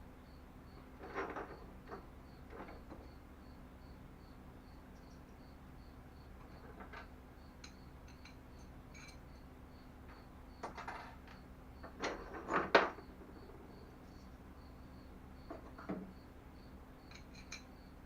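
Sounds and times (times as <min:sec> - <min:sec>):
metal bolts clinking: 0:06.4 - 0:09.5, 0:17.1 - 0:17.8.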